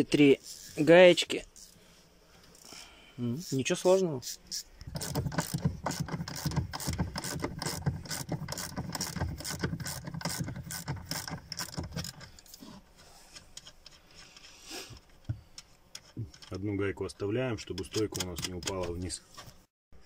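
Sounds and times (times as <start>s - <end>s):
ratchet wrench clicking: 4.2s - 12.4s.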